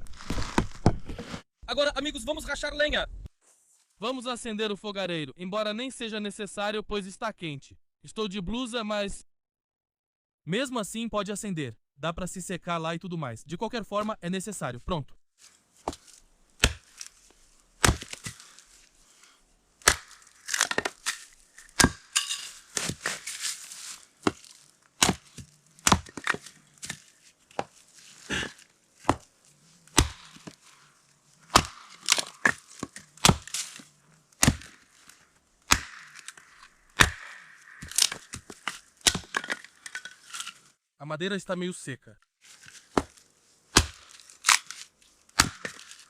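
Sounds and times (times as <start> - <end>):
blade striking wood: 15.8 - 17.1, 17.8 - 18.5, 19.8 - 23.5, 24.2 - 27.0, 27.6 - 29.3, 29.9 - 30.6, 31.5 - 33.8, 34.4 - 34.9, 35.7 - 40.2, 42.9 - 46.0
dry wood cracking: 15.8 - 40.7, 42.6 - 46.0.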